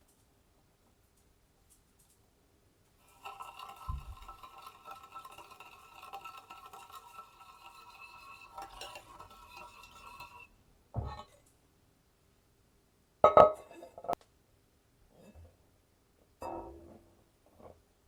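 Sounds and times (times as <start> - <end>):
utensil stirring in a bowl: 3.0 - 10.5.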